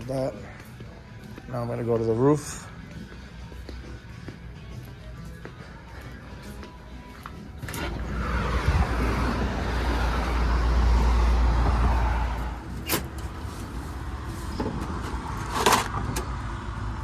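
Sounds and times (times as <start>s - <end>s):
low vehicle rumble: 5.6s - 17.0s.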